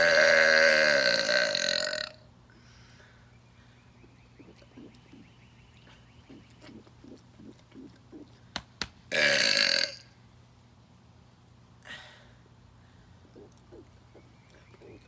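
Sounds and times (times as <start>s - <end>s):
man belching: 0.0s - 2.2s, 9.1s - 10.1s.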